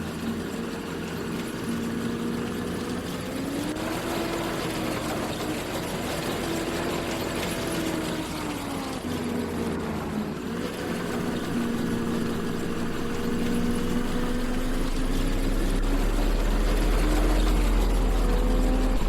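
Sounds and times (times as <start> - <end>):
farm machinery engine running: 0.0 - 19.0
deep rumble: 10.6 - 19.0.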